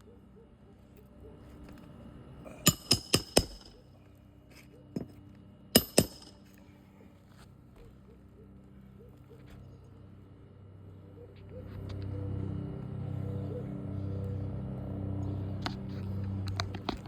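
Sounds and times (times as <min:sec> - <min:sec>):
hammer driving nails: 0:02.6 - 0:03.8, 0:05.8 - 0:06.4.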